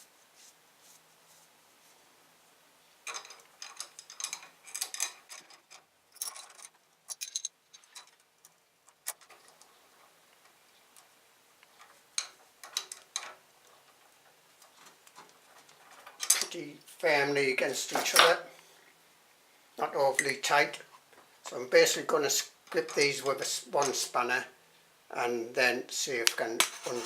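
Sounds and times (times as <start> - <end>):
metal spanners clicking on nuts: 3.1 - 8.2, 14.7 - 16.6.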